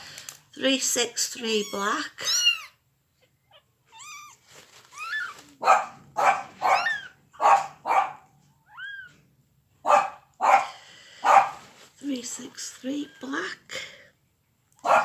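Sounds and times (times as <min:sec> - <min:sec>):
kittens mewing: 0:01.4 - 0:07.9, 0:08.6 - 0:09.3
dog barking: 0:05.6 - 0:08.4, 0:09.8 - 0:11.6, 0:14.8 - 0:15.0.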